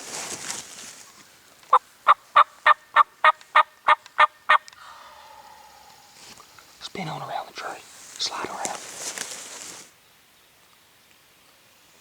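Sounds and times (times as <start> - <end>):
rustling: 0.0 - 1.8, 7.8 - 9.9.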